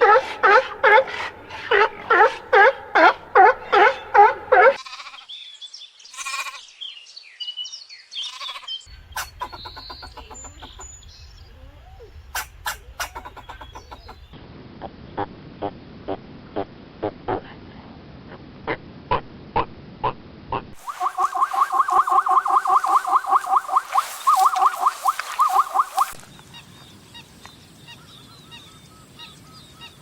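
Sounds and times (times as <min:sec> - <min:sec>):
goat bleats: 0:04.8 - 0:05.3, 0:06.1 - 0:06.7, 0:08.2 - 0:08.8.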